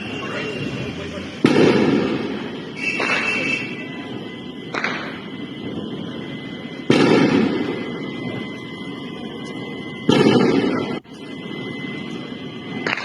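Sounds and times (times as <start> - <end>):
loud rumbling booms: 0.0 - 9.1.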